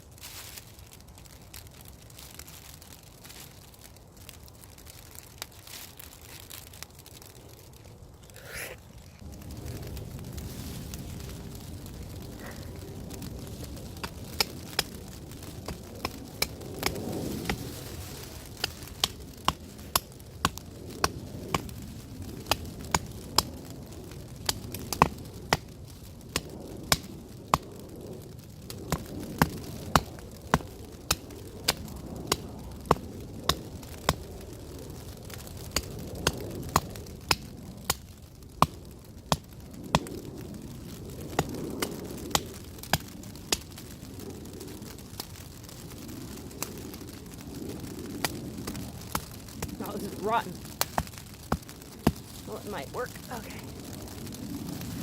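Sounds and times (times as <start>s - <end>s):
chopping wood with a blade: 50.8s - 52.2s.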